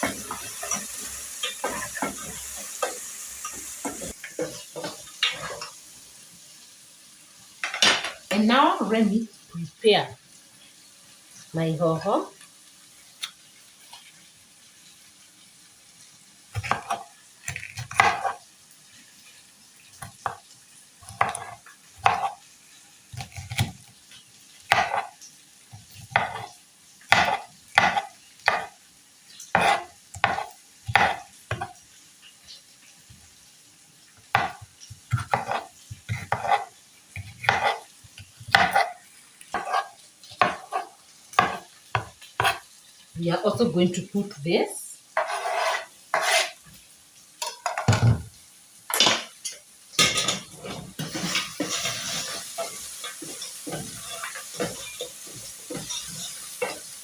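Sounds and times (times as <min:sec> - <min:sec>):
knife chopping on cutting board: 0:16.6 - 0:18.4, 0:21.1 - 0:22.4, 0:24.7 - 0:25.1, 0:27.1 - 0:28.7, 0:29.5 - 0:31.7, 0:34.3 - 0:37.8, 0:38.5 - 0:38.9, 0:39.6 - 0:42.6, 0:45.2 - 0:46.5.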